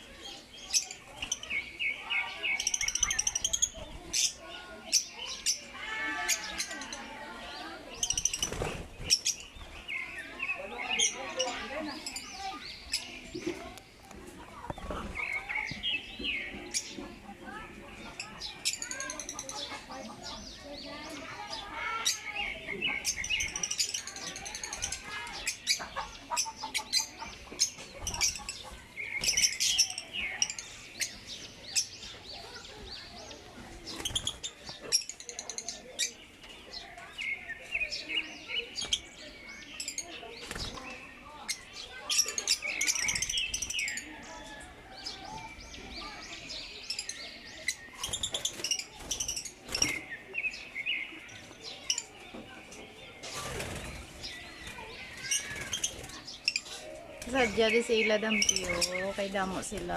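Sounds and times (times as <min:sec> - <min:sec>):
lovebirds chirping: 0:00.0 - 0:59.9
wings rustling: 0:08.0 - 0:09.5.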